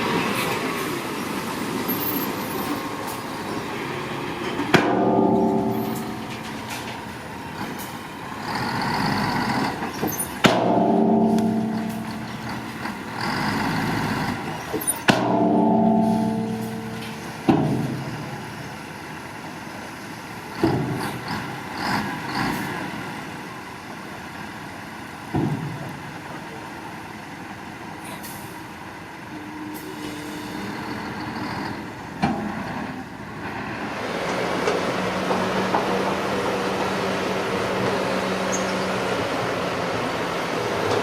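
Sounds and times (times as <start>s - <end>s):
heavy machinery engine running: 0.0s - 23.2s
knocks and clanks: 4.4s - 18.6s
low hum: 4.8s - 7.6s, 10.5s - 13.3s, 15.2s - 18.4s.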